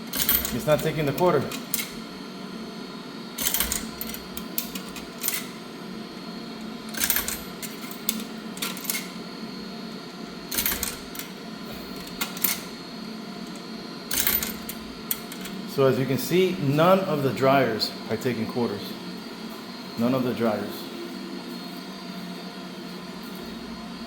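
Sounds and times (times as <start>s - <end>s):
steady hum: 0.0s - 24.0s
coins clattering in coin slot: 0.1s - 1.9s, 3.4s - 5.6s, 6.9s - 9.1s, 10.5s - 11.3s, 12.0s - 12.7s, 14.1s - 15.6s.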